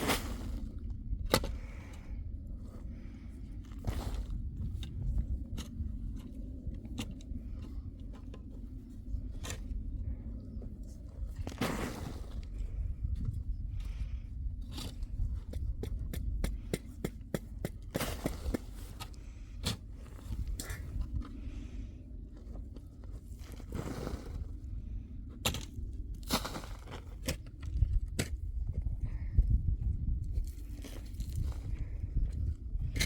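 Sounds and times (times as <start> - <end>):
constant low rumble: 0.0 - 33.0.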